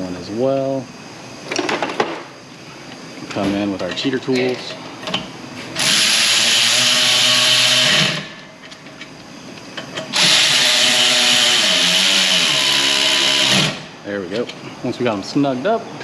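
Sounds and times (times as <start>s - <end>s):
cordless power tool whirring: 5.8s - 8.3s, 10.1s - 13.9s.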